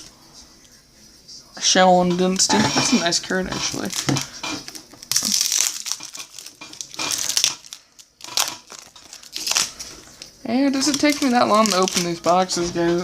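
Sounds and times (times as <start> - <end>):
card pack wrapper crinkling: 2.8 - 12.6.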